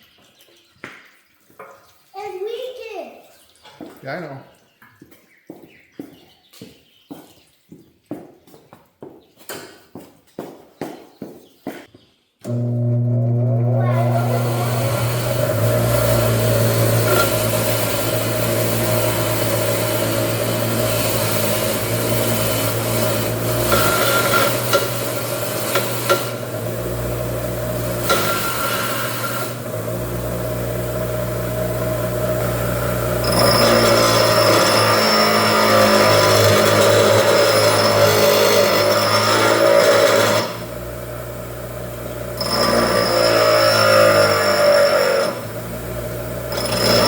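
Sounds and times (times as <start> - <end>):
power tool humming and scraping: 12.4 - 47.0.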